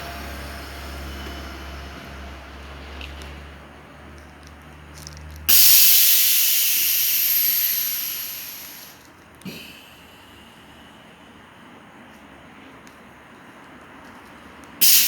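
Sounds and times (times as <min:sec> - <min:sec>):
air hiss from suspension valve: 0:05.5 - 0:11.0.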